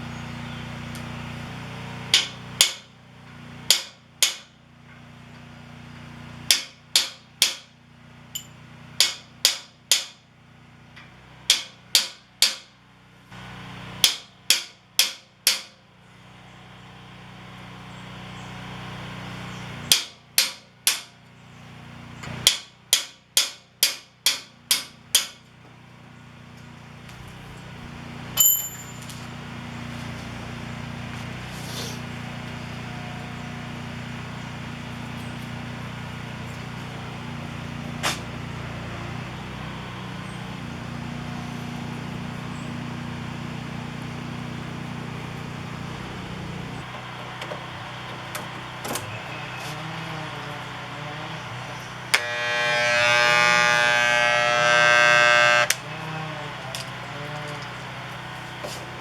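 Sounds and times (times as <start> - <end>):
ringing metallic clang: 28.4 - 29.3.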